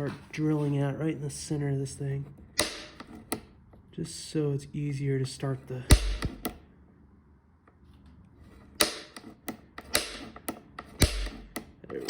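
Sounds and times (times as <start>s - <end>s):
centre punch striking metal: 2.6s - 3.0s, 5.9s - 6.6s, 9.9s - 10.3s, 11.0s - 11.6s.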